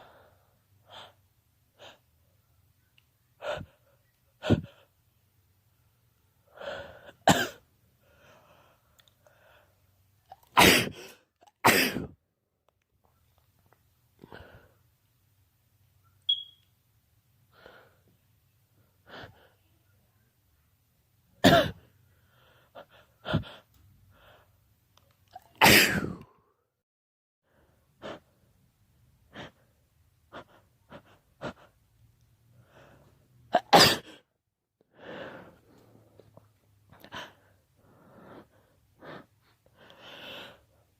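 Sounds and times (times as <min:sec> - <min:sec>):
person sneezing: 0:10.3 - 0:12.2, 0:25.4 - 0:26.3, 0:33.5 - 0:34.2
breaths and sniffs: 0:21.8 - 0:24.6, 0:27.5 - 0:28.5, 0:30.3 - 0:31.8, 0:34.9 - 0:40.9.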